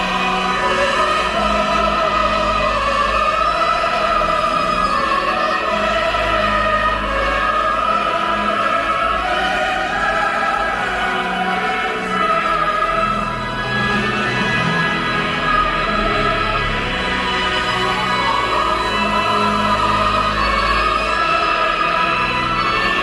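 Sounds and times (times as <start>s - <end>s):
choral and orchestral music: 0.0s - 23.0s.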